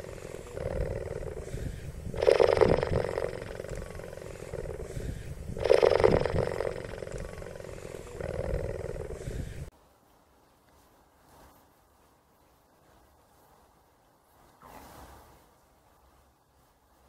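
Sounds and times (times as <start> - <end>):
loud animal calls: 0.0 - 9.7.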